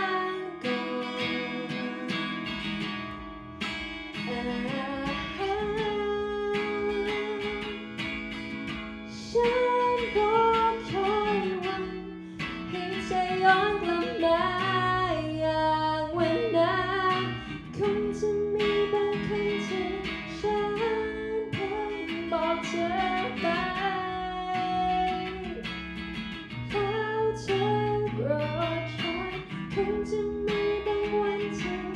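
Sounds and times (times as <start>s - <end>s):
person singing: 0.0s - 3.1s, 4.2s - 25.6s, 26.7s - 31.9s
acoustic guitar strummed and picked: 0.0s - 31.9s.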